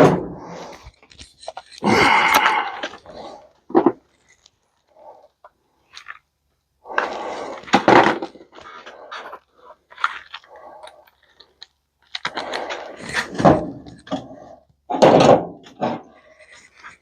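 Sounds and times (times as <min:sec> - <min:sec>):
scattered clicks: 0:00.7 - 0:03.1
metal and plastic parts breaking: 0:14.9 - 0:16.2.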